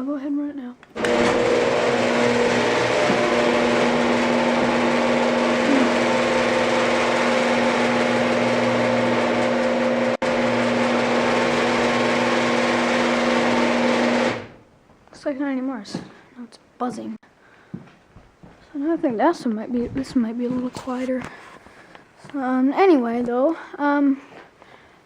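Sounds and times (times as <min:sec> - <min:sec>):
garage door opener motor hum: 0:00.9 - 0:14.6.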